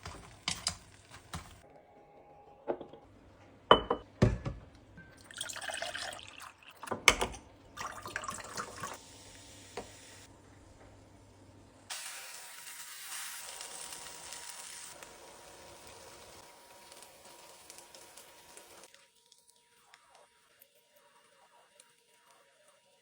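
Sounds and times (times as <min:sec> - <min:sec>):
glass clinks and knocks: 0:03.7 - 0:05.2
liquid pouring into a glass: 0:05.1 - 0:09.0.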